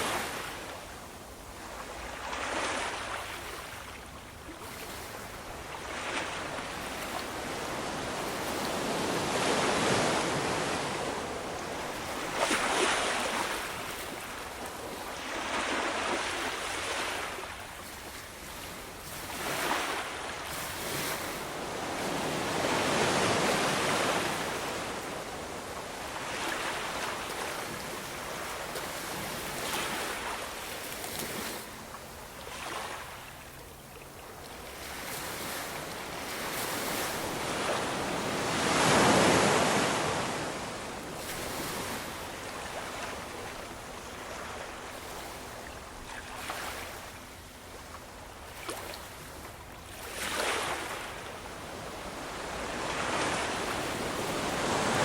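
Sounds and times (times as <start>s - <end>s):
ocean waves breaking: 4.6s - 17.6s, 18.5s - 31.8s, 32.4s - 47.2s, 49.9s - 55.0s.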